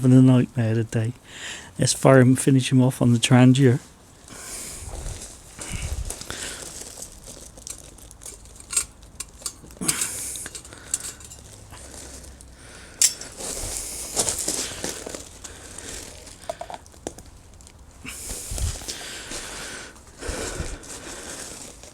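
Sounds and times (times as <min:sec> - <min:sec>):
metal cookware clinking and scraping: 0:08.3 - 0:11.5, 0:13.0 - 0:13.4
sharp metal clank: 0:08.6 - 0:11.4, 0:13.0 - 0:13.4.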